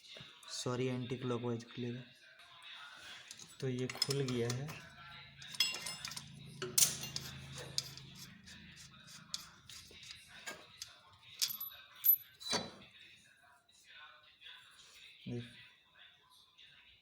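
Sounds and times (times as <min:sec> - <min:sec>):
metal parts clinking: 0:03.2 - 0:12.7.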